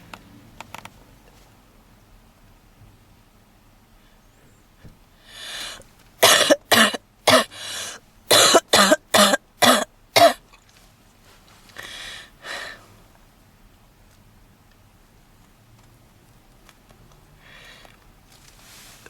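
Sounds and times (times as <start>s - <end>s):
gasping breaths: 5.2s - 5.9s, 7.3s - 8.0s, 11.8s - 13.0s
woman coughing harshly: 6.2s - 10.4s.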